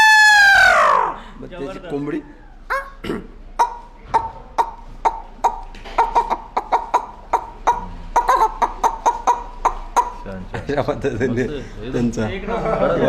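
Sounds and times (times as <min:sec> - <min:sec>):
man imitating hen clucking: 0:02.7 - 0:10.4.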